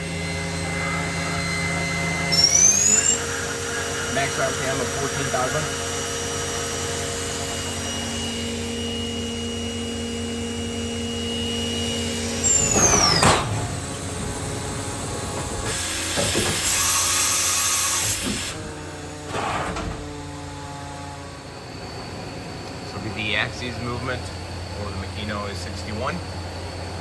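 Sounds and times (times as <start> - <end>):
machine spindle whine: 0.0 - 27.0
mechanical clunks: 12.5 - 17.3, 18.5 - 20.4.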